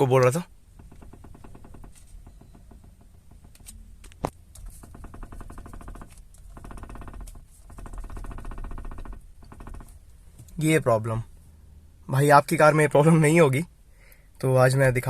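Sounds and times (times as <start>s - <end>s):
rattling and clicking in steering column: 0.0s - 10.7s.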